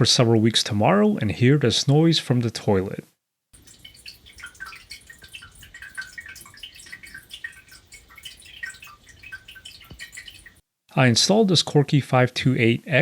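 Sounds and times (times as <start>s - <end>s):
water dripping in toilet tank: 3.6s - 10.6s.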